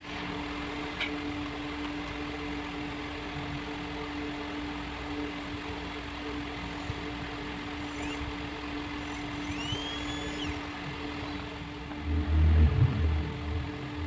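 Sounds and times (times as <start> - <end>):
small motor humming: 6.0 - 11.9.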